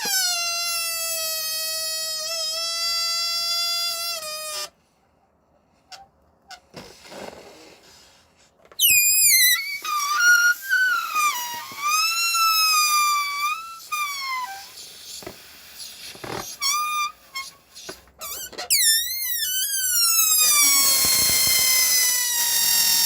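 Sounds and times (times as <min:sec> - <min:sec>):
balloon deflating squeal: 0:00.0 - 0:04.8, 0:05.9 - 0:08.1, 0:08.8 - 0:23.0
short rubber squeaks: 0:00.0 - 0:04.8, 0:08.7 - 0:23.0
rubbery rustles: 0:06.5 - 0:23.0.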